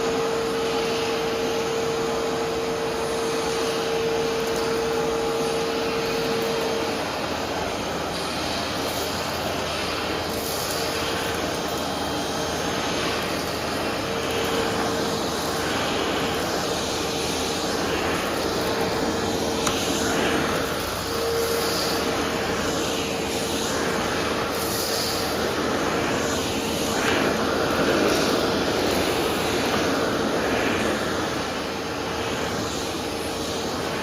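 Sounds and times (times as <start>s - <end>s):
vacuum cleaner running: 0.0s - 34.0s.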